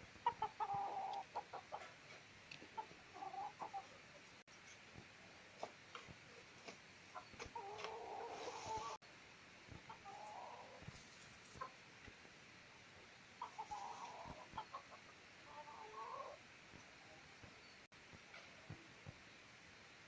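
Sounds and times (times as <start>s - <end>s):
chicken clucking: 0.2s - 4.4s, 6.6s - 9.0s, 9.8s - 11.8s, 13.4s - 16.4s.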